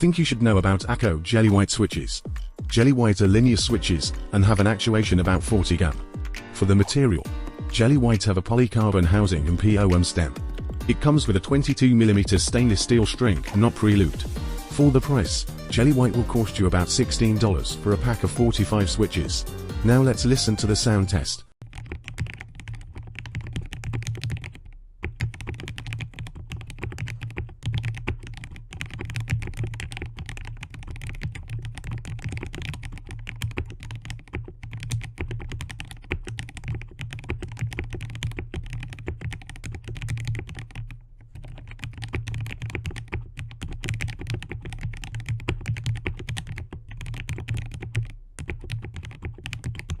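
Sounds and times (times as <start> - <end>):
mechanical keyboard typing: 20.0 - 50.0.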